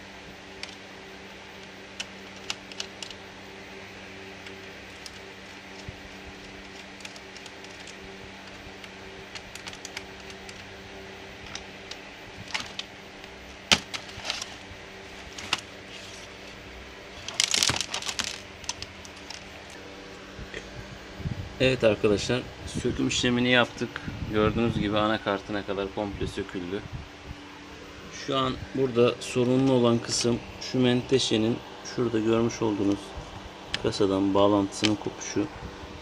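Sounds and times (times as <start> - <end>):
steady low hum: 0.0 - 36.0
plastic laptop parts clicking: 2.0 - 3.2, 4.4 - 10.7, 11.4 - 14.5, 17.3 - 19.5.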